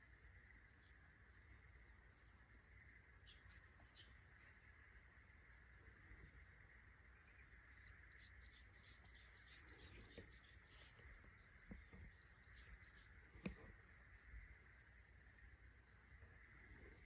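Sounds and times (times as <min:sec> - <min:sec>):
faint clicks: 0:12.9 - 0:13.9.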